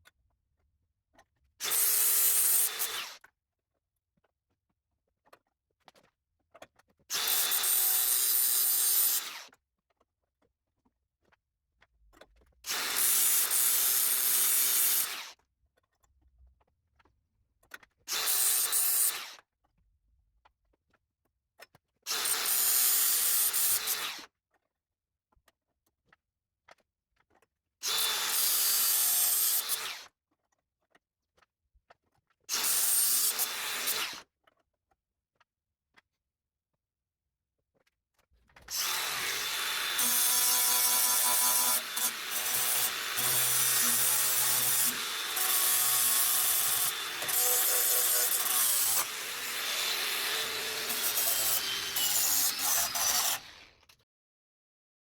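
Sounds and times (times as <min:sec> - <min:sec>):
electric power tool bursts: 0:38.7 - 0:53.8.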